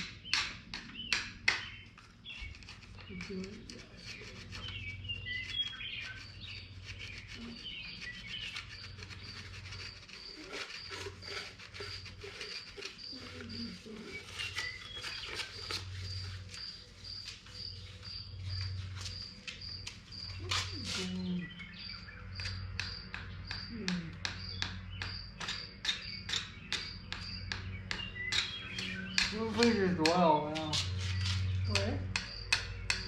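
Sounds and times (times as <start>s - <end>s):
emery cloth scraping metal: 6.0s - 19.5s.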